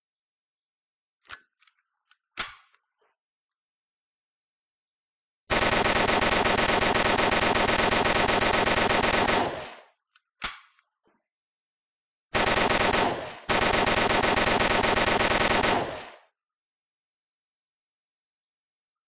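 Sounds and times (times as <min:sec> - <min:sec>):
submachine gun automatic fire: 0:05.5 - 0:09.9, 0:12.4 - 0:16.3.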